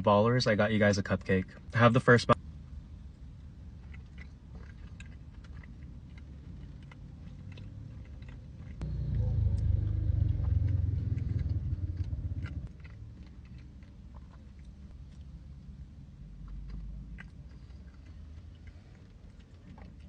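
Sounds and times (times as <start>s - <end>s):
chewing soft cake: 1.4s - 20.0s
low rumble: 8.8s - 13.2s.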